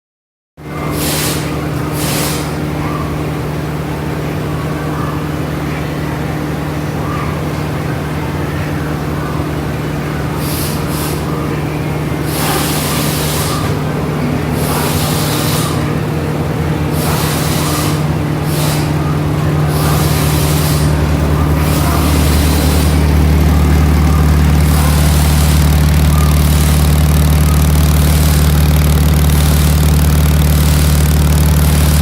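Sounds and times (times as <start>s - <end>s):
car engine idling: 0.6s - 32.0s
exhaust hissing bursts: 0.8s - 2.9s, 9.0s - 32.0s.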